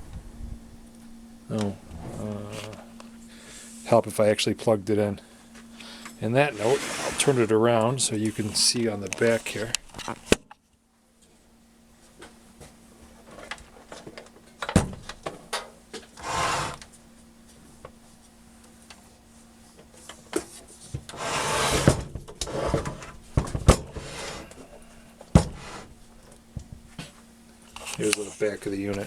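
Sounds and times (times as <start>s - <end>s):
heavy instrument scraping on table: 6.4s - 7.6s, 16.2s - 16.8s, 21.1s - 23.1s, 23.9s - 24.5s, 25.5s - 25.9s.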